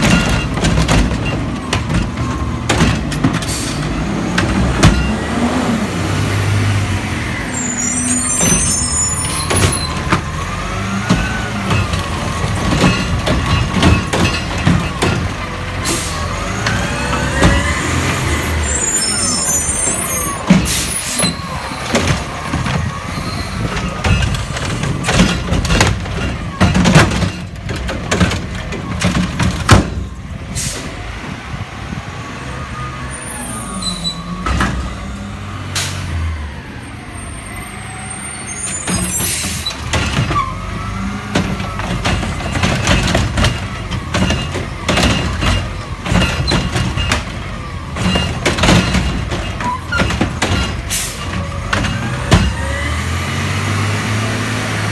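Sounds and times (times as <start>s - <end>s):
metal clanks and knocks: 0.0s - 5.4s, 9.4s - 18.3s, 20.4s - 30.6s, 38.9s - 54.2s
garbage truck engine whining: 0.0s - 54.9s
air brake hisses: 30.5s - 31.0s.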